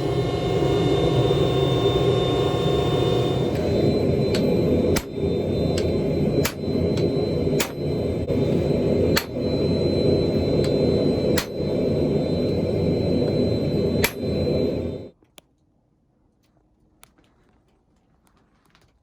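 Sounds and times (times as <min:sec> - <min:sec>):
forge roaring with high whine: 0:00.0 - 0:15.1
hammer blows on hot steel: 0:00.0 - 0:15.1.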